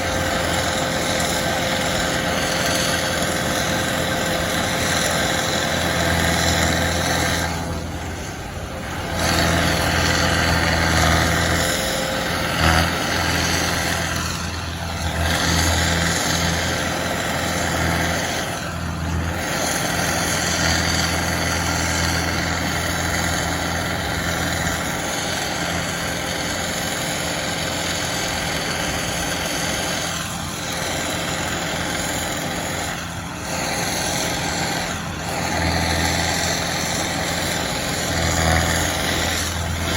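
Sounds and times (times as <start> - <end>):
heavy equipment engine humming: 0.0 - 39.9.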